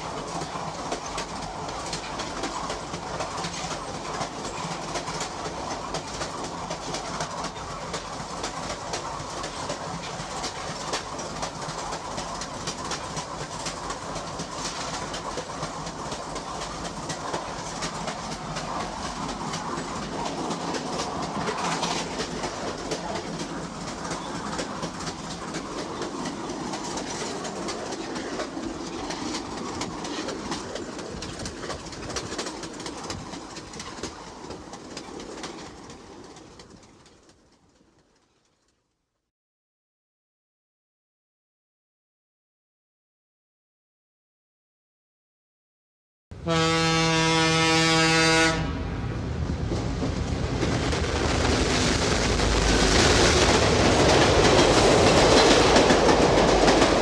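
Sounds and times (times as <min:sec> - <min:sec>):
rumbling noise: 0:48.7 - 0:57.0.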